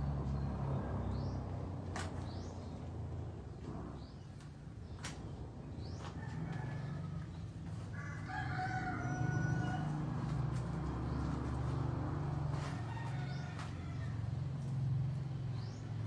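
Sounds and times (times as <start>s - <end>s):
rooster crowing: 6.2s - 10.4s, 12.4s - 14.6s.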